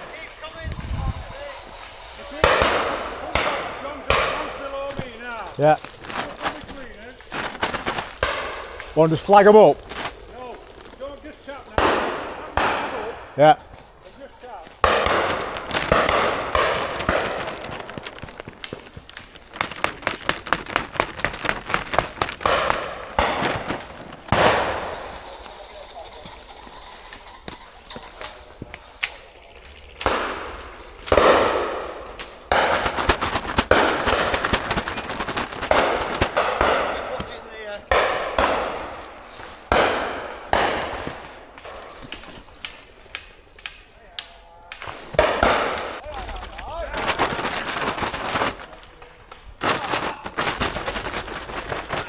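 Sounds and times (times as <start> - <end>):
shotgun shots echoing: 1.4 - 26.7, 30.0 - 42.4, 44.8 - 46.0.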